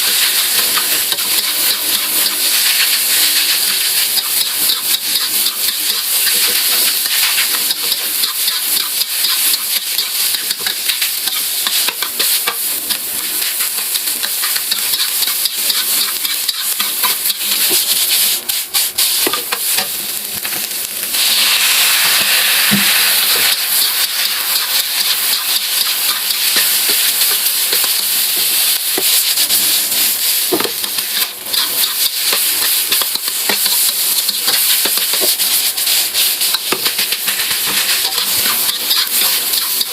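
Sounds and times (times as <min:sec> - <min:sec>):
food sizzling in a pan: 0:00.0 - 0:39.9
spatula scraping a pan: 0:00.1 - 0:18.4, 0:30.7 - 0:39.9.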